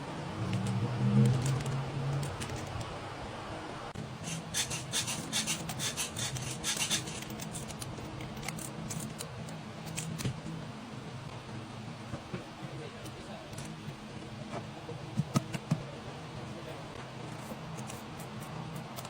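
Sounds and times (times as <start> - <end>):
tool scraping and rasping: 4.2 - 7.8.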